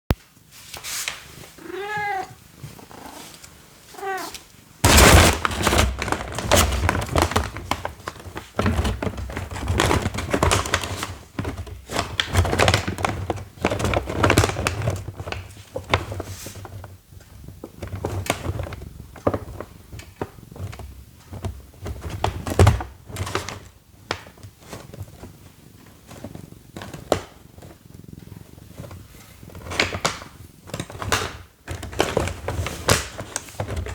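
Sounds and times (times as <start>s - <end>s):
cat scratching in cardboard box: 0.6s - 33.9s
cat meowing: 1.6s - 2.4s, 3.9s - 4.4s.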